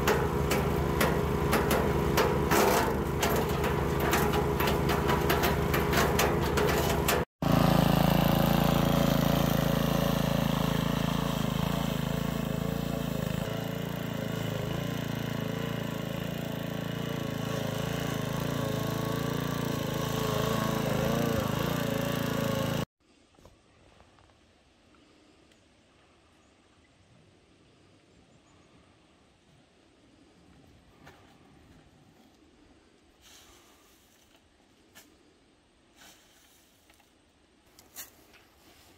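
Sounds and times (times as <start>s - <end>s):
wood chipper running: 0.0s - 22.9s.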